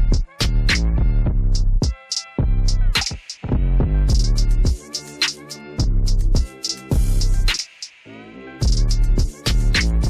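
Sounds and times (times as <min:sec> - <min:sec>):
sharp high percussion beat: 0:01.5 - 0:03.5, 0:04.1 - 0:10.0.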